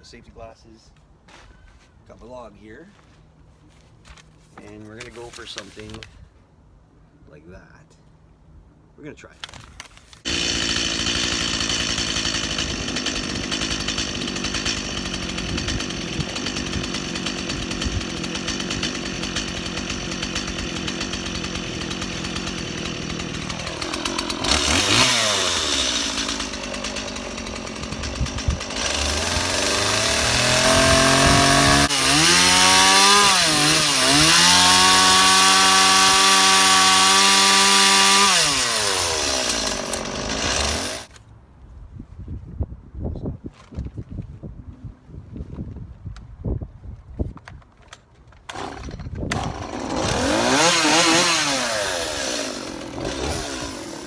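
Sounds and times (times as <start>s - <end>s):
chainsaw running and revving: 10.3s - 41.2s, 48.5s - 54.0s.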